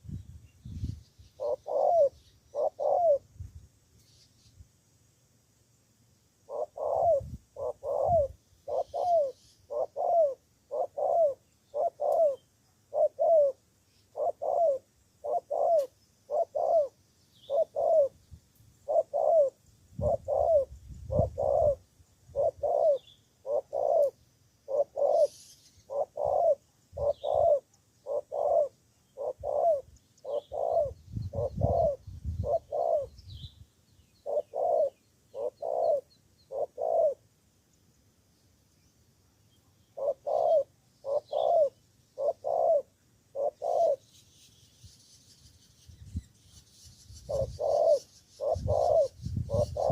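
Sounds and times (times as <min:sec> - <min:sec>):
dove cooing: 0:01.3 - 0:03.3, 0:06.4 - 0:18.2, 0:18.8 - 0:33.5, 0:34.2 - 0:37.3, 0:39.9 - 0:44.0, 0:47.1 - 0:49.9.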